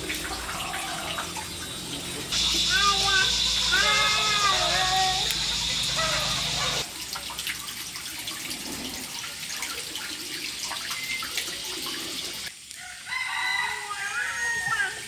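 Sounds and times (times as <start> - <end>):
water running and splashing: 0.0 - 12.6
short pitched call: 2.3 - 6.8.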